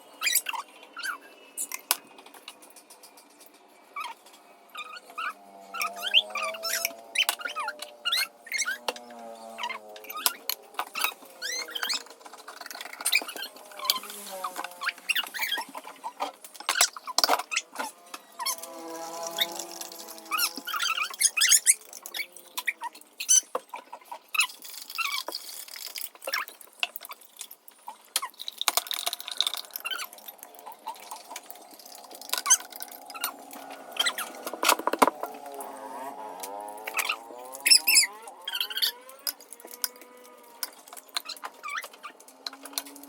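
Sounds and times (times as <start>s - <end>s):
kitchen items clicking and knocking: 10.0s - 35.5s
wavering pitched sound: 29.7s - 40.7s.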